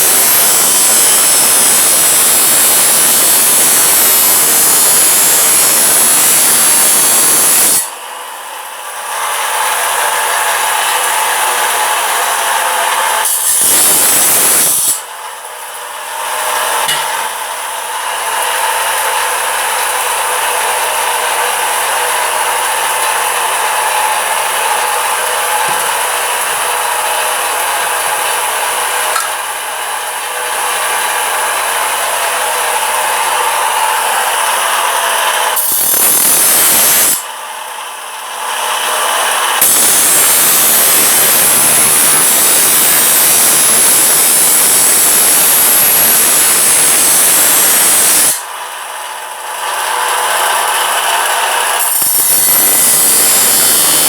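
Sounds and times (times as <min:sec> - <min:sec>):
loud hiss: 0:00.0 - 0:07.9, 0:13.3 - 0:15.0, 0:39.6 - 0:48.4
power tool grinding metal: 0:00.0 - 0:08.4, 0:09.0 - 0:15.2, 0:16.0 - 0:48.7, 0:49.7 - 0:54.0.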